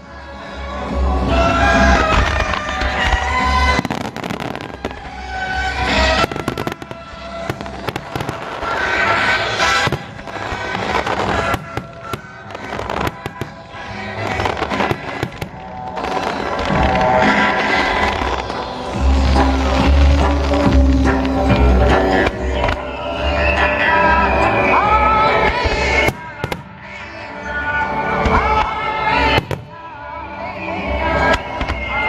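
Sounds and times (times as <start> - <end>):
loud music: 0.0 - 32.0
firework crackling and popping: 1.2 - 27.0, 28.0 - 29.9, 30.9 - 32.0.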